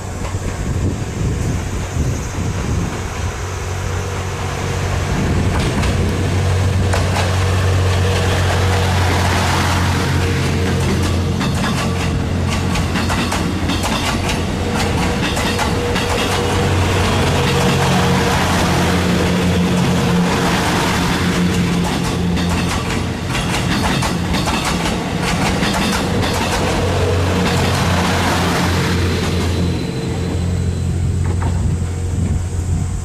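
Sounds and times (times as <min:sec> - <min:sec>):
train engine hum: 0:00.0 - 0:33.0
wheels clicking over rail joints: 0:05.4 - 0:29.8.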